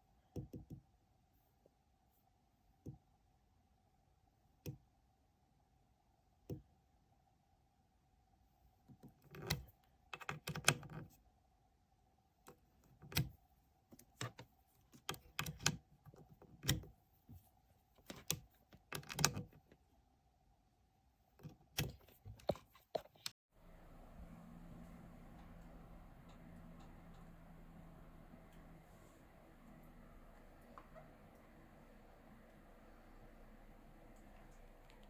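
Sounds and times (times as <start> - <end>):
faint steady hum: 23.6 - 35.0.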